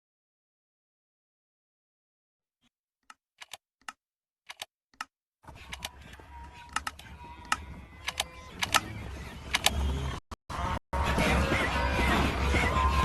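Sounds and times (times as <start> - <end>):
sharp clicks: 3.1 - 5.1, 6.7 - 9.8.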